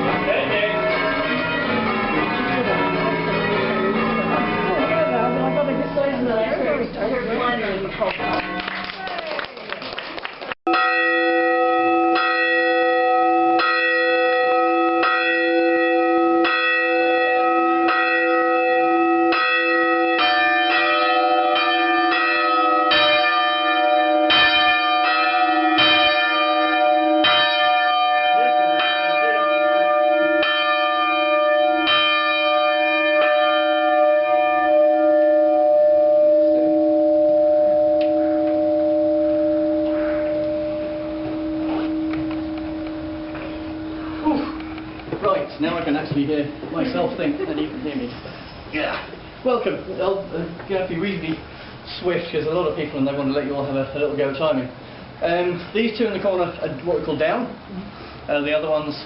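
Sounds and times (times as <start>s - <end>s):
church bells ringing: 0.0s - 9.3s, 10.7s - 48.1s.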